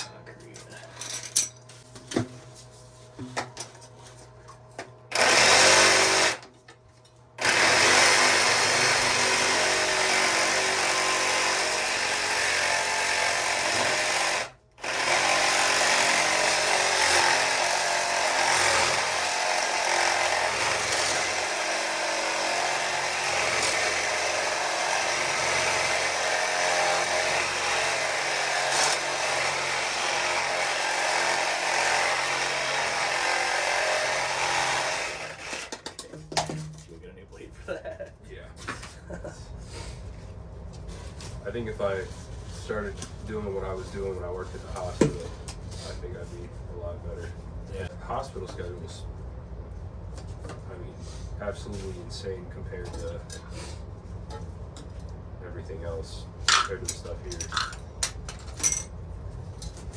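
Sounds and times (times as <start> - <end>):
demolition hammer chipping concrete: 7.4 - 35.9.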